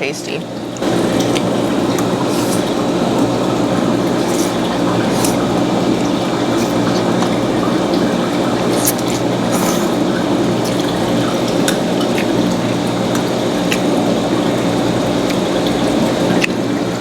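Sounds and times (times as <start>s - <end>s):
steady background hum: 0.0s - 17.0s
wet chewing of noodles: 0.8s - 16.8s
mouth smacks and clicks: 13.6s - 13.9s.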